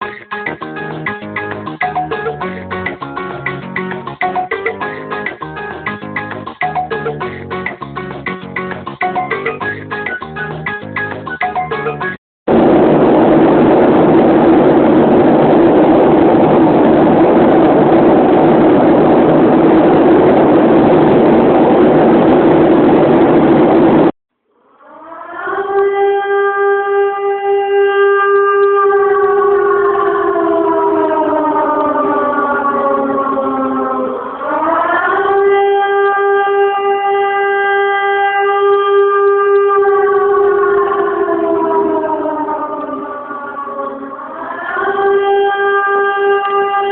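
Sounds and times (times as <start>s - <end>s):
music: 0.0s - 12.2s
air-raid siren wailing: 24.7s - 46.9s.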